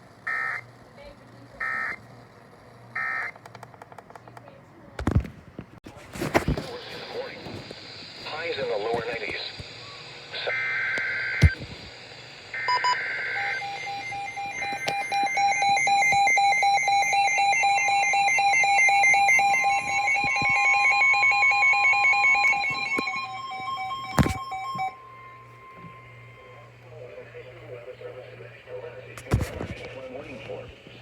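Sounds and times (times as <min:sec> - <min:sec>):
screechy warbling data tones: 0:12.6 - 0:28.4.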